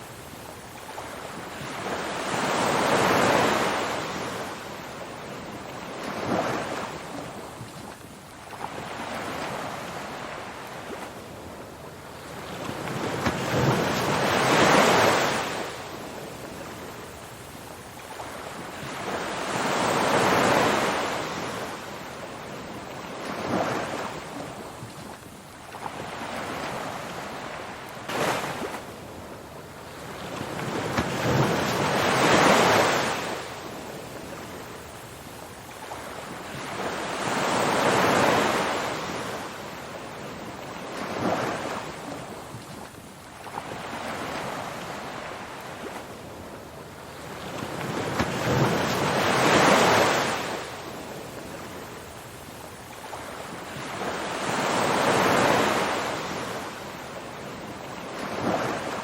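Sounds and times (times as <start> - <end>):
ocean waves washing ashore: 0.0 - 59.0.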